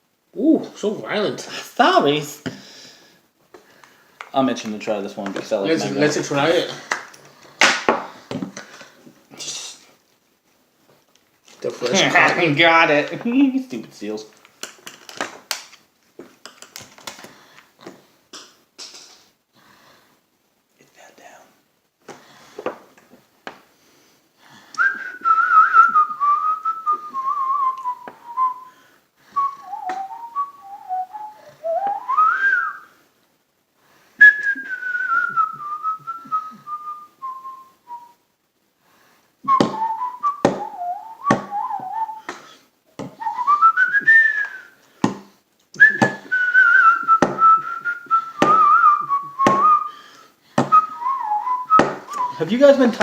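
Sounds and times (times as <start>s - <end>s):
person whistling a tune: 24.8s - 28.7s, 29.3s - 33.0s, 34.2s - 38.2s, 39.5s - 42.3s, 43.2s - 44.8s, 45.8s - 50.0s, 50.7s - 52.4s.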